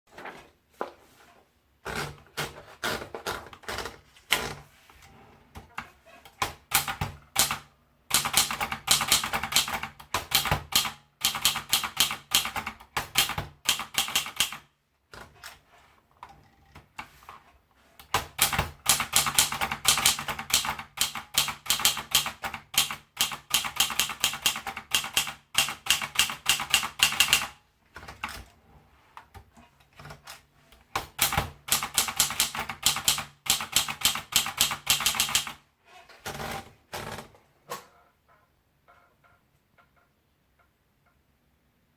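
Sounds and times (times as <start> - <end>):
typewriter keys striking: 18.1 - 28.4, 31.0 - 35.6.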